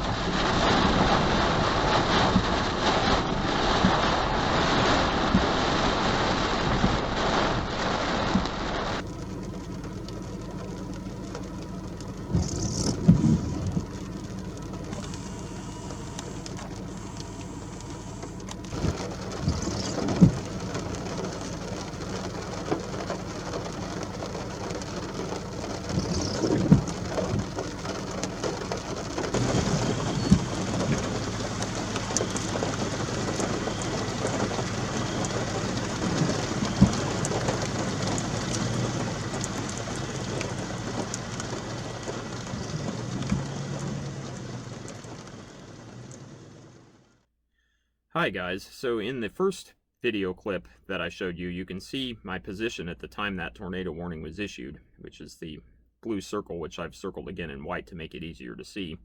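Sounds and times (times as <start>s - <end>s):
gusty wind: 0.0s - 9.0s
heavy rain: 0.0s - 47.2s
loud thumps: 12.3s - 14.0s, 25.8s - 35.0s.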